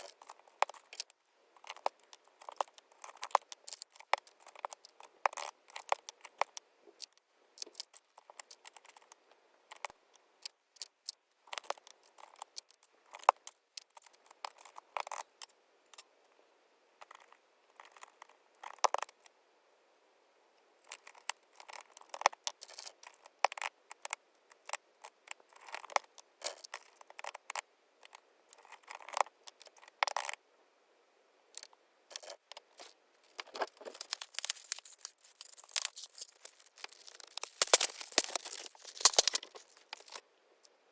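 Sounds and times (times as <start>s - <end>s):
plastic keycaps clicking: 32.1s - 40.2s.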